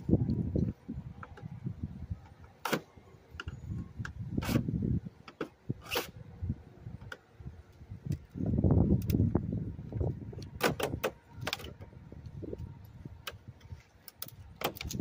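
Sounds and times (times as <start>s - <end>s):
sharp clicks and knocks: 10.4s - 15.0s.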